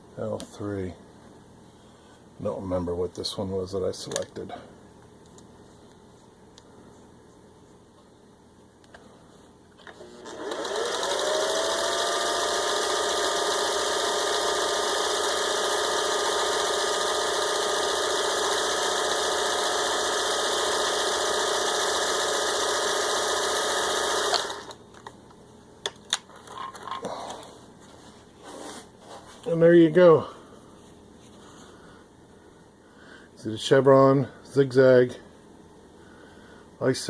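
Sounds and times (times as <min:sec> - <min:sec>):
sewing machine running: 0:10.0 - 0:24.8.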